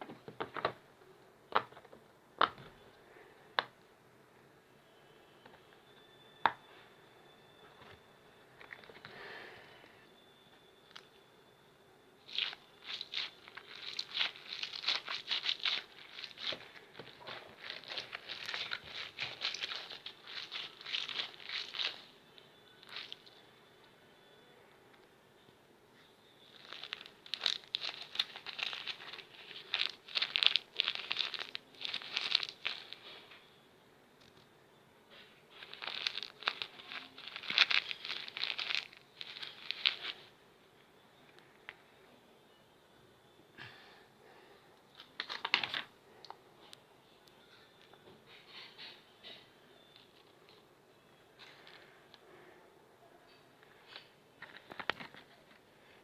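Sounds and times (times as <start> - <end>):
fidget toy crinkling: 12.2 - 23.6, 26.3 - 33.5, 35.5 - 40.3, 53.6 - 55.7.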